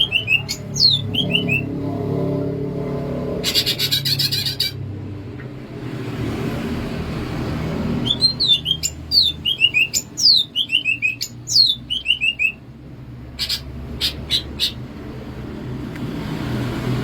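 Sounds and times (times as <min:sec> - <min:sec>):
bird singing whistled notes: 0:00.0 - 0:01.7, 0:08.0 - 0:12.6
low steady rumble: 0:00.0 - 0:06.2.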